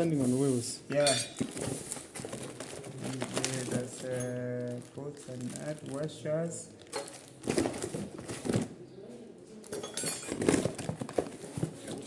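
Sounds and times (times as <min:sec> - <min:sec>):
metal bolts and nuts clinking: 0:00.9 - 0:01.4, 0:09.7 - 0:10.5.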